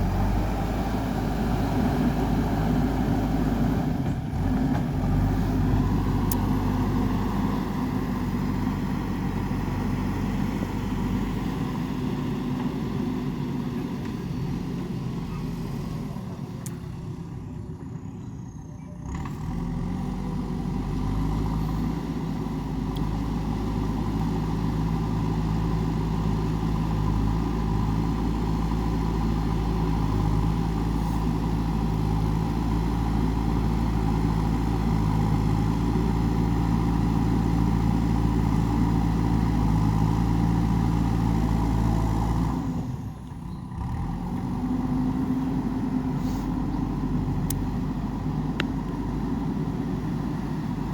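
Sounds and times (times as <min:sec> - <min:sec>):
diesel engine under load: 0:00.0 - 0:50.9.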